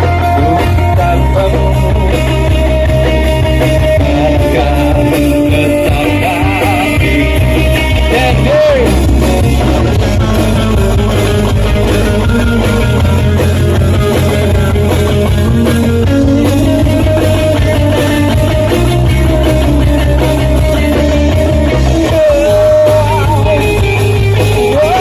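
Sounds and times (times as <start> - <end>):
person singing: 0.0 - 2.5, 3.8 - 9.8, 21.6 - 25.0
live pop-rock band: 0.0 - 25.0.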